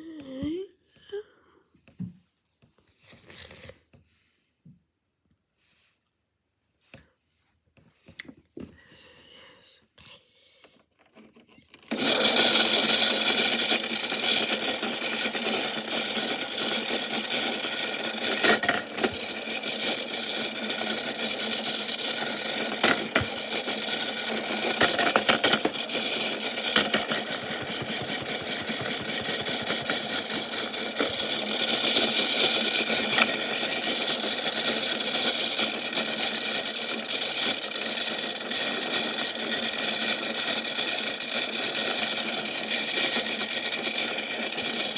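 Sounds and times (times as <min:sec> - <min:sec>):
washing machine running: 0:11.8 - 0:39.2.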